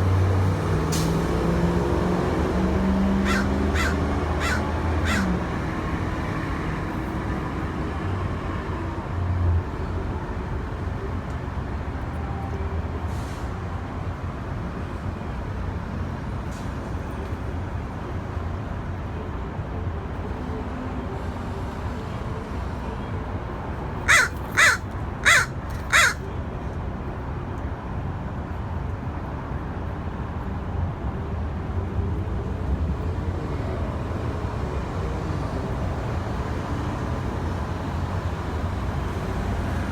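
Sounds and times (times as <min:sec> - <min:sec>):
crow cawing: 0:03.2 - 0:05.4, 0:24.1 - 0:26.3.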